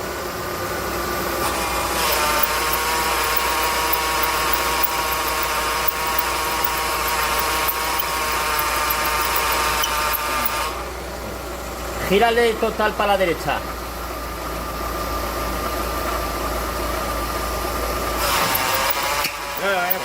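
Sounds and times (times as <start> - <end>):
power steering pump whining: 1.4 - 10.9, 16.1 - 20.0.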